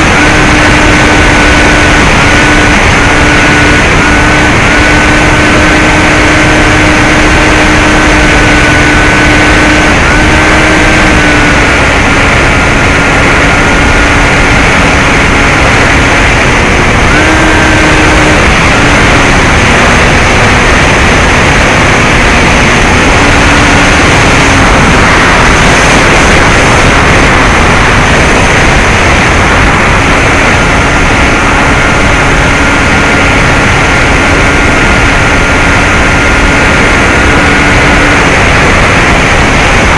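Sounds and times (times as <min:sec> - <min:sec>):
electric motor and propeller hum: 0:00.0 - 0:39.9
wind rush: 0:00.0 - 0:39.9.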